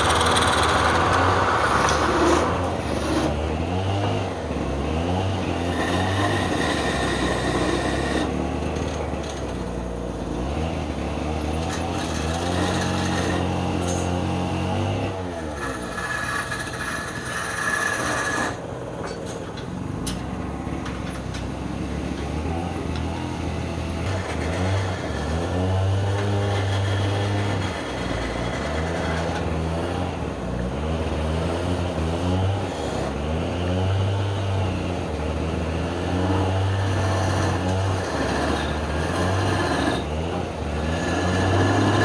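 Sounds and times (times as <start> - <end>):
turning tool cutting wood: 0.0 - 18.7, 20.9 - 30.1, 35.4 - 42.0
wood lathe humming: 0.0 - 18.9, 34.8 - 42.0.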